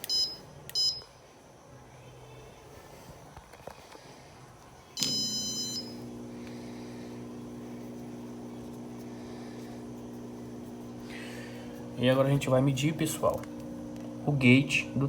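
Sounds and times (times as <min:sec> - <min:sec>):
electronic beep: 0:00.0 - 0:01.1, 0:05.0 - 0:06.0
drain pump humming: 0:05.0 - 0:15.0.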